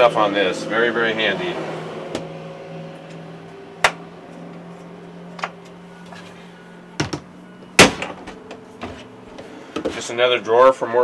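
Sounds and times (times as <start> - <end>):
cabinet doors and drawers clicking: 7.0 - 7.2.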